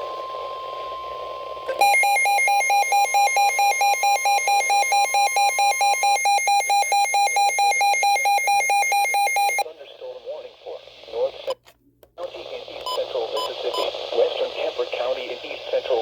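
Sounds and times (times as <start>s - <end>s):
rapidly pulsing buzzy beep: 1.8s - 9.6s, 12.9s - 13.9s.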